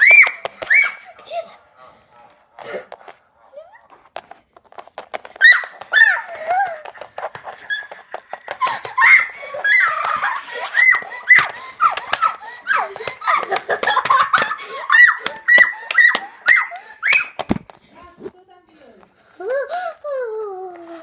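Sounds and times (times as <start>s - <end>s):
child laughing: 5.4s - 17.4s.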